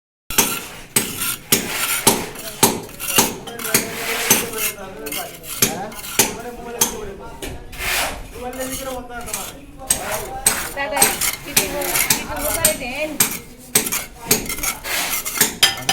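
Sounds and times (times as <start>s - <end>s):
metal tool clinking on hard material: 15.4s - 15.9s.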